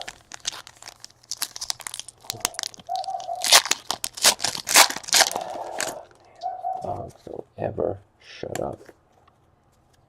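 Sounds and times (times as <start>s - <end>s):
wrappers tearing and crinkling: 0.0s - 6.1s.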